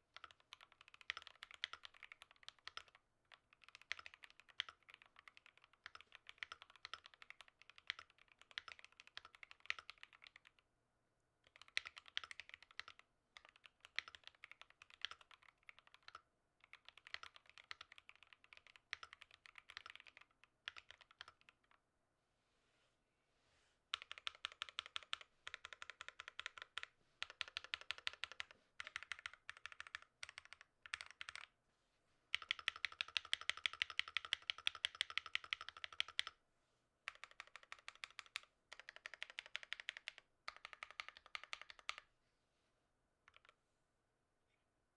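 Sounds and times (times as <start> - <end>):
mechanical keyboard typing: 0.2 - 10.6, 11.4 - 21.8, 23.9 - 31.5, 32.3 - 36.4, 37.1 - 42.1, 43.3 - 43.6.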